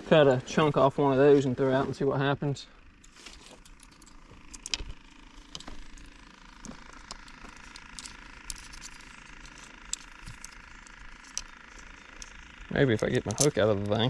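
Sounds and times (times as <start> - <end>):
fishing tackle clicking and rattling: 3.0 - 14.0.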